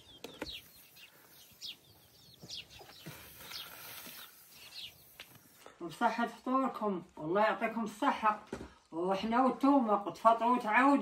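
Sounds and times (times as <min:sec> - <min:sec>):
birds chirping: 0:00.0 - 0:06.9.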